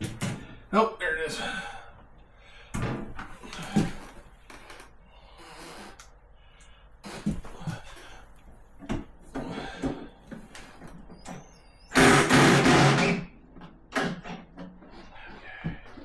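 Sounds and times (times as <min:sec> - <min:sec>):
power drill driving a screw: 0:11.9 - 0:13.2.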